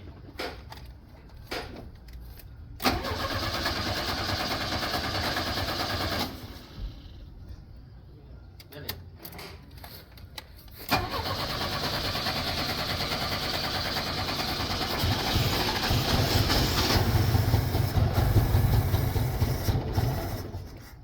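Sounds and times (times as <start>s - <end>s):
car starter whirring: 2.8s - 7.3s, 10.9s - 20.9s.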